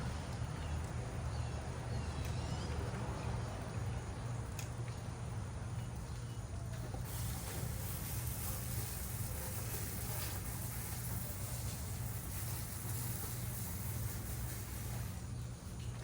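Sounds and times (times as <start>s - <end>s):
steady low hum: 0.0s - 16.0s
birds chirping faintly: 5.6s - 16.0s.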